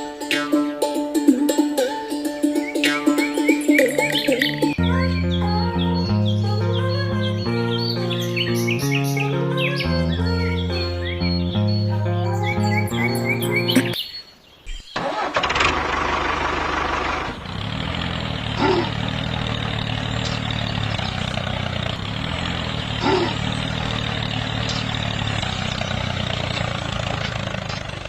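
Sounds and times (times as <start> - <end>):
engine starting and idling: 15.0 - 28.0.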